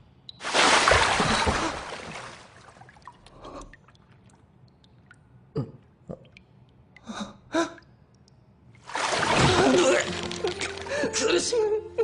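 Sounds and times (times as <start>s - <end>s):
water dripping: 0.2s - 11.0s
water splash in bathtub: 0.4s - 3.2s, 8.8s - 11.0s.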